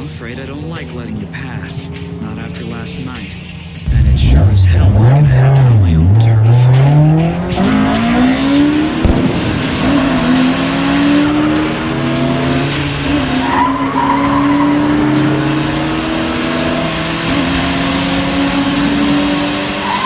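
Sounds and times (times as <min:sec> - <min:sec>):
sports car engine at high revs: 0:00.0 - 0:20.0
tyres squealing: 0:05.4 - 0:20.0.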